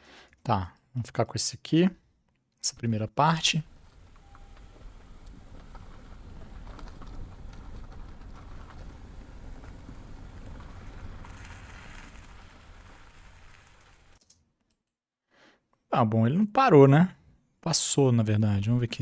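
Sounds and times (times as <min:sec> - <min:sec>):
crackling tyre noise: 0:03.3 - 0:14.4
car engine rumble: 0:03.5 - 0:14.2.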